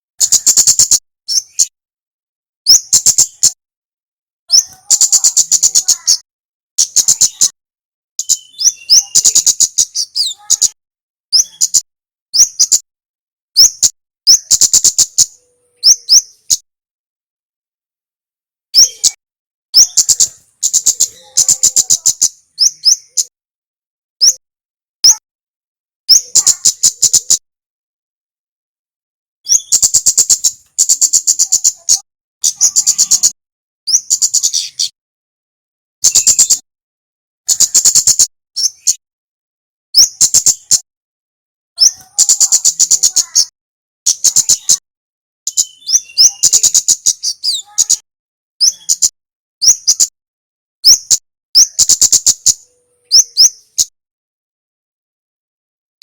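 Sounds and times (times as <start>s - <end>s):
rapid high-pitched ticking calls: 0.2s - 1.7s, 2.7s - 3.6s, 4.5s - 6.2s, 6.8s - 7.6s, 8.2s - 12.9s, 13.6s - 16.7s, 19.8s - 23.3s, 26.1s - 27.4s, 29.5s - 34.9s, 36.0s - 36.6s, 37.5s - 39.0s, 40.0s - 40.8s, 41.8s - 43.5s, 45.5s - 48.0s, 50.9s - 52.6s.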